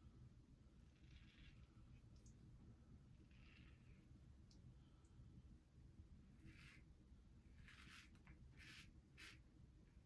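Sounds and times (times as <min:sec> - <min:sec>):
faint scrape: 0:07.5 - 0:09.4.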